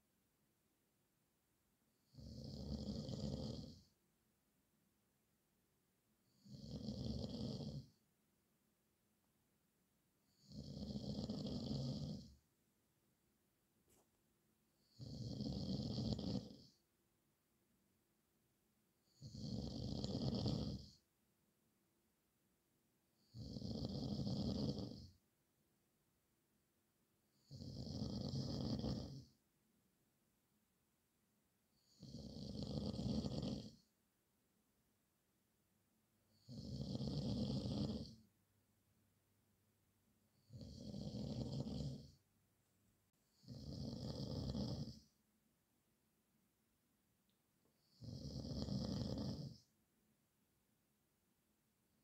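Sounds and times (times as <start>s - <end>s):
man snoring: 2.1s - 3.8s, 6.4s - 7.9s, 10.4s - 12.3s, 14.8s - 16.8s, 19.1s - 21.0s, 23.2s - 25.1s, 27.4s - 29.3s, 31.8s - 33.8s, 36.4s - 38.2s, 40.4s - 42.1s, 43.3s - 45.0s, 47.8s - 49.6s.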